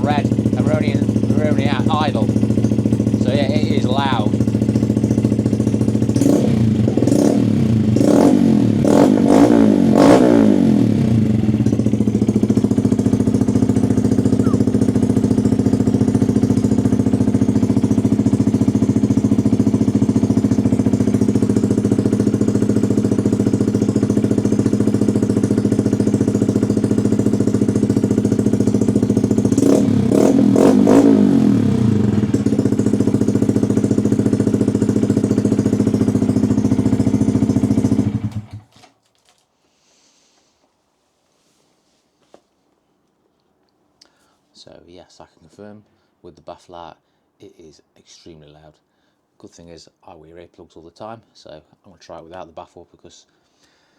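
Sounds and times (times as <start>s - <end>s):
engine revving: 0.0s - 38.6s
motorcycle engine idling loudly: 0.0s - 38.7s.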